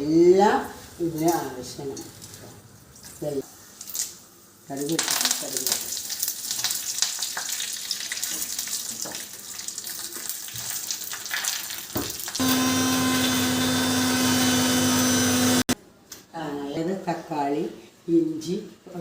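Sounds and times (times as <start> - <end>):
seeds crackling in hot oil: 3.0 - 12.8
mixer grinder humming: 12.4 - 15.8.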